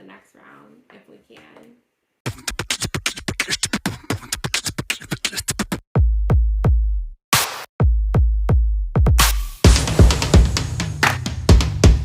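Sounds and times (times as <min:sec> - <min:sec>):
drum machine roll: 0:07.4 - 0:12.0
deep booming bass drum: 0:07.8 - 0:12.0.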